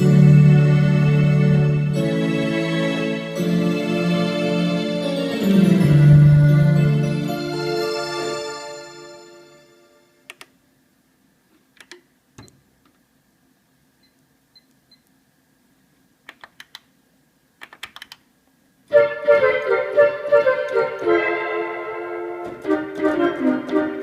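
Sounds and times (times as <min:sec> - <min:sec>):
organ-like keyboard chords: 0:00.0 - 0:10.2, 0:18.9 - 0:24.0
synthesizer keyboard sound: 0:18.9 - 0:24.0.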